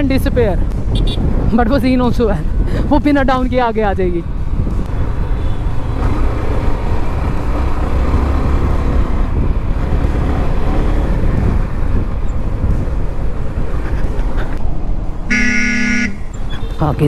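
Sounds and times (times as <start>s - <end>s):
road and wind rumble: 0.0s - 17.0s.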